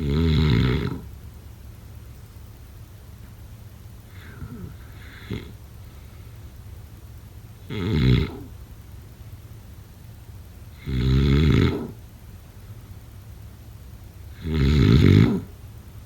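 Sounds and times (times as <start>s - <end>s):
loud snores: 0.0s - 1.1s, 4.1s - 5.6s, 7.7s - 8.5s, 10.8s - 12.0s, 14.3s - 15.5s.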